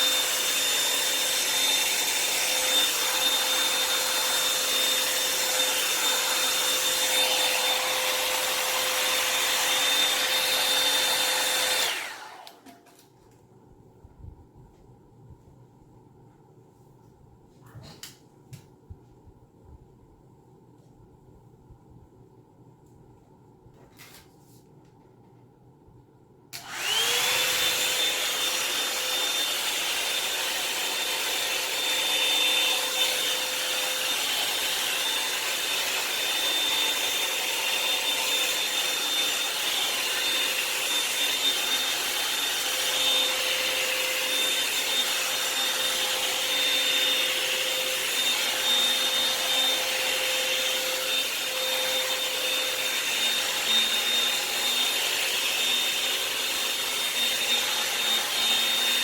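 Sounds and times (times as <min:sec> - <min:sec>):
hair dryer brush motor whine: 0:00.0 - 0:12.8, 0:26.6 - 0:59.0.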